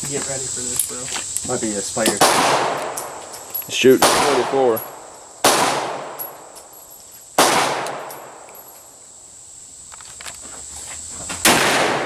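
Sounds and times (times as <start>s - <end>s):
revolver shots echoing: 4.0s - 4.7s.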